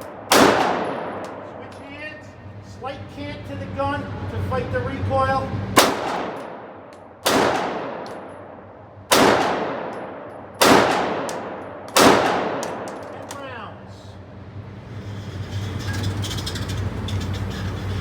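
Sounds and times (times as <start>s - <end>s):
pistol shots with echo: 0.0s - 1.9s, 5.8s - 13.6s.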